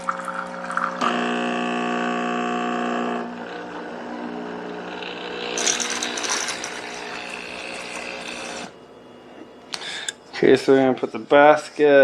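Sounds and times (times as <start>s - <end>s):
espresso machine pump hum: 0.0s - 8.8s.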